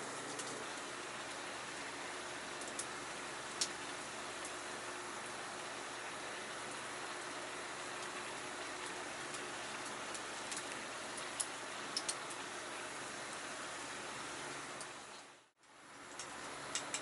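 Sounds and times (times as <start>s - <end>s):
campfire crackles: 0.0s - 13.5s.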